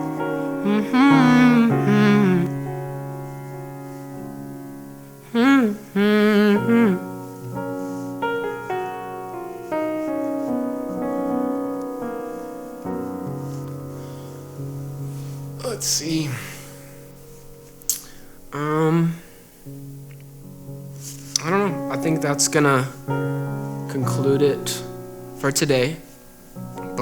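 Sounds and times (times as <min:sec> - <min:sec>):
person singing: 0:00.0 - 0:02.8, 0:05.2 - 0:07.4
piano chords: 0:00.0 - 0:27.0.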